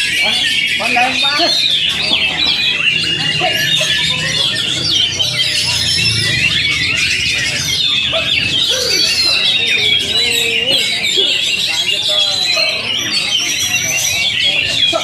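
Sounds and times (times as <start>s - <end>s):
birds singing: 0.0s - 15.0s
faint murmur of voices: 0.0s - 15.0s.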